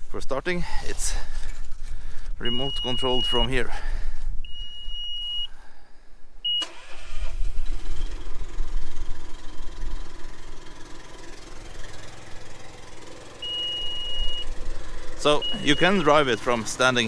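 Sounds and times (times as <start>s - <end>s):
high beep: 2.5s - 3.5s, 4.5s - 5.5s, 13.4s - 14.5s, 15.4s - 16.1s
engine idling: 6.5s - 17.0s.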